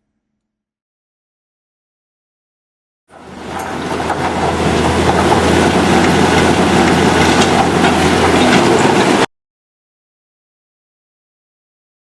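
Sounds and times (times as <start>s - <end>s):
heavy machinery clattering: 3.1s - 9.3s.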